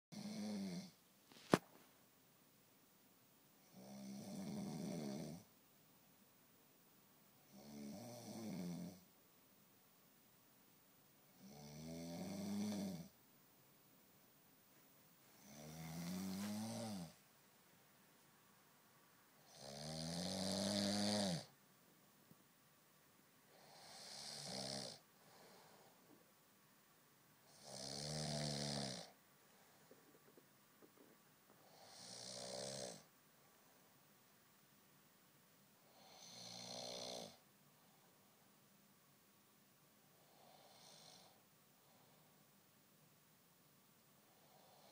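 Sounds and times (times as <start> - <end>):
man snoring: 0.1 - 1.0, 3.6 - 5.5, 7.5 - 9.0, 11.4 - 13.1, 15.4 - 17.2, 19.4 - 21.5, 23.5 - 25.8, 27.4 - 29.2, 30.9 - 33.1, 35.8 - 37.4, 40.3 - 41.4, 44.4 - 44.9.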